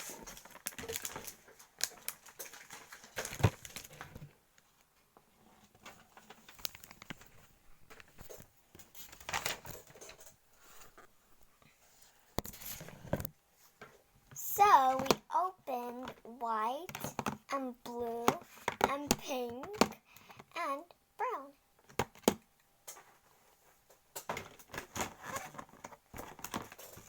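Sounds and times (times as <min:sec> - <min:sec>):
packaging crinkling and rustling: 0:00.0 - 0:04.3, 0:05.6 - 0:11.1, 0:24.1 - 0:27.0.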